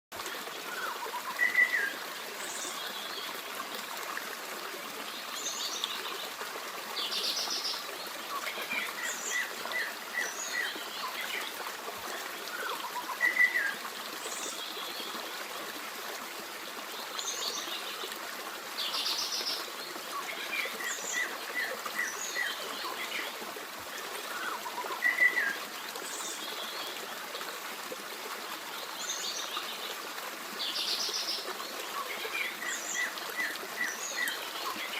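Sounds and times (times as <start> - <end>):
stream running: 0.1 - 34.9.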